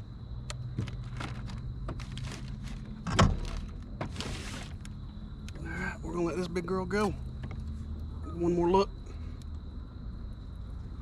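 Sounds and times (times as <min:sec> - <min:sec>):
gear clicks and knocks: 0:00.4 - 0:04.9.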